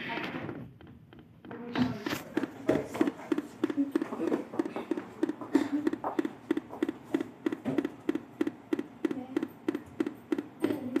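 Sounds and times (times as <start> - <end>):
laptop error beeps: 3.3 - 11.0.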